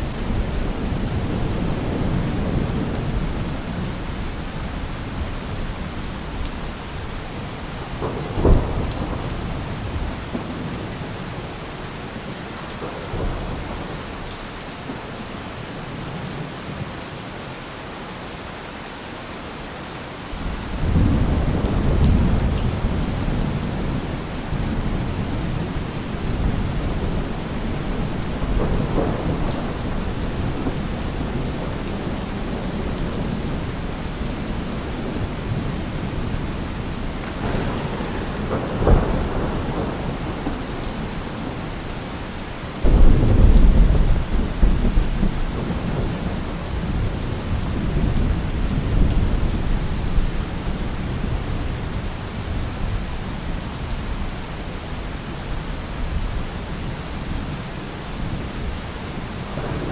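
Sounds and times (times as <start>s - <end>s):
heavy rain: 0.0s - 59.9s
rolling thunder: 7.8s - 10.8s, 20.4s - 51.7s, 59.4s - 59.9s
loud thunderclap: 7.9s - 10.6s, 20.4s - 33.7s, 37.2s - 41.7s, 42.8s - 49.8s
sharp thunder cracks: 37.2s - 41.7s, 42.8s - 46.2s.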